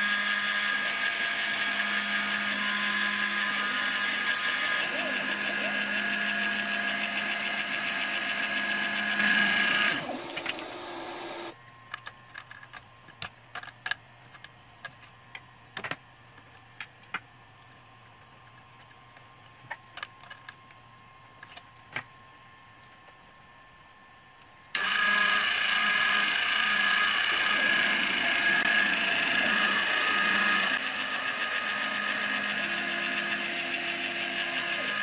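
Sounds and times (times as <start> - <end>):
mill spindle motor whining: 0.0 - 11.7, 24.7 - 35.0.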